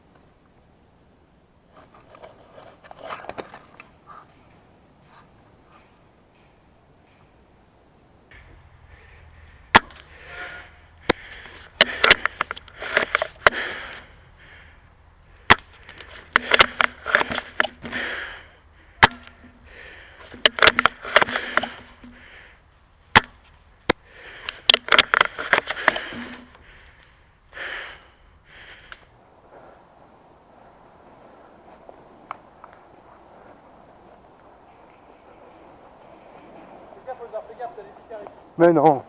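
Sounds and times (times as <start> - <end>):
camera rig rustling: 1.7 - 7.4, 8.3 - 14.2, 15.6 - 18.3, 18.9 - 27.3.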